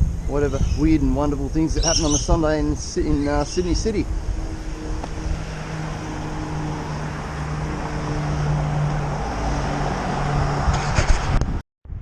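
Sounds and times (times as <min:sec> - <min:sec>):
road and tyre noise: 0:00.0 - 0:12.0
car engine drone: 0:02.6 - 0:11.1.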